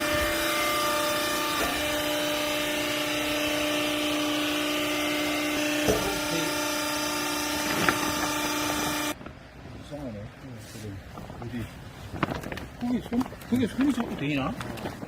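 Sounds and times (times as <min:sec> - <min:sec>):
hydraulic power unit humming: 0:00.0 - 0:09.3.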